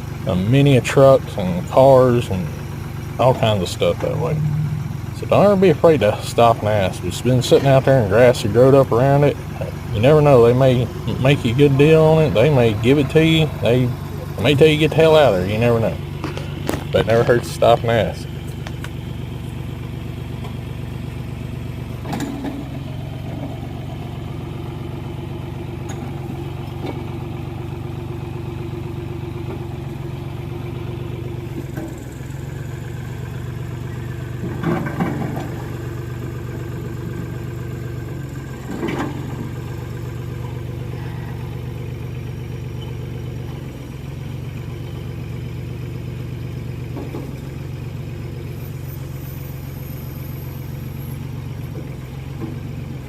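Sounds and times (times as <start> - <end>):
diesel engine running: 0.0 - 53.0
metal clanks and knocks: 34.4 - 35.7.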